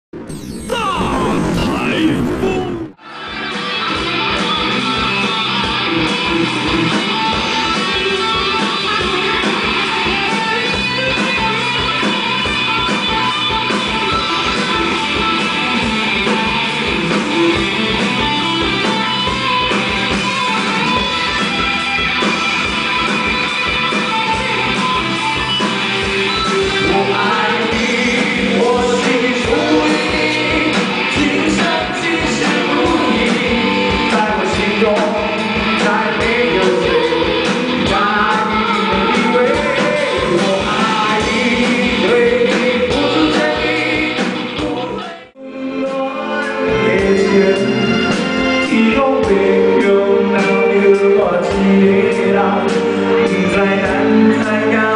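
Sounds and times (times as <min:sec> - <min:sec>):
live rock band playing: 0:00.7 - 0:54.9
person singing: 0:26.3 - 0:54.9.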